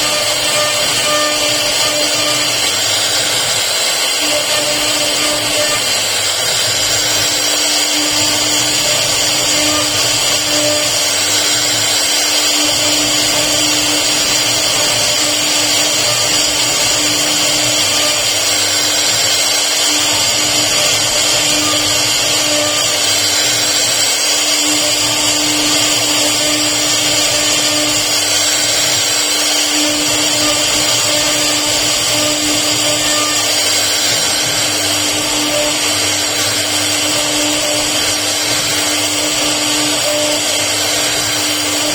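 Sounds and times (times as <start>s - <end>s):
router spindle whining: 0.0s - 41.9s.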